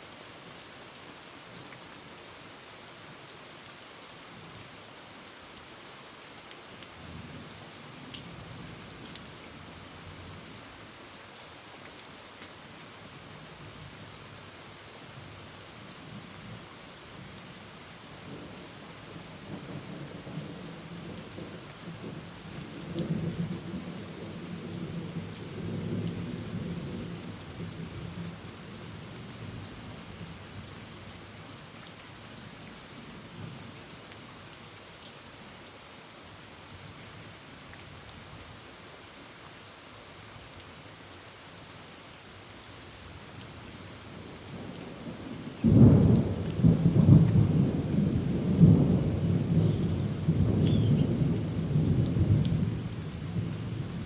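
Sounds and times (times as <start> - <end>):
heavy rain on a tin roof: 0.0 - 54.0
low thunder rumble: 45.6 - 54.0.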